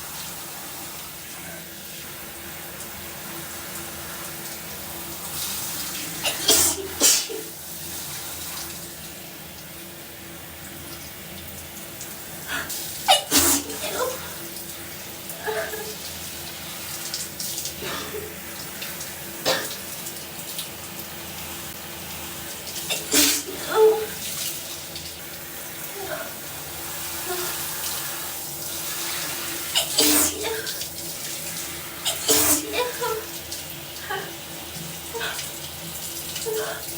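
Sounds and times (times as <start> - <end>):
shower water running: 0.0 - 36.9
woman sneezing: 6.2 - 7.5, 12.5 - 14.4, 22.9 - 24.2, 29.8 - 30.8, 32.1 - 33.3.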